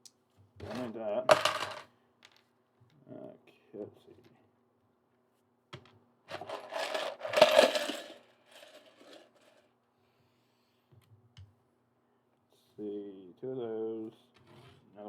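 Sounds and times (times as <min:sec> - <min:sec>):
plastic parts clattering: 0:00.6 - 0:02.5, 0:06.3 - 0:09.6.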